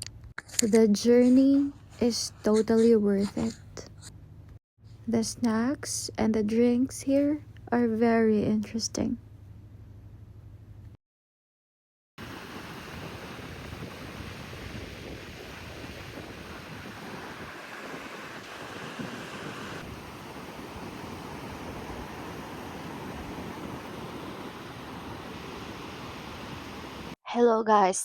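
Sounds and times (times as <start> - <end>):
sea surf rushing: 12.2 - 27.2
wind: 12.2 - 27.2.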